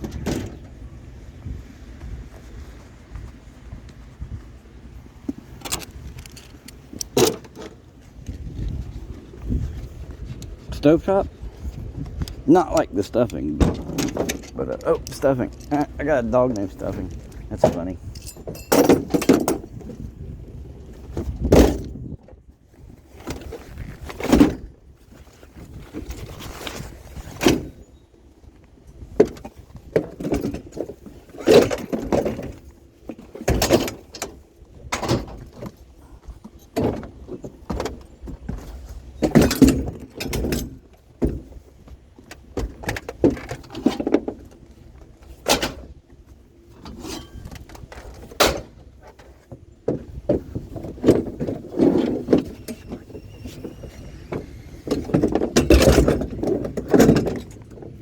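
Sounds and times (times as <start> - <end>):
hard objects clunking and rattling: 0.0 - 0.8, 5.2 - 20.1, 28.9 - 58.0.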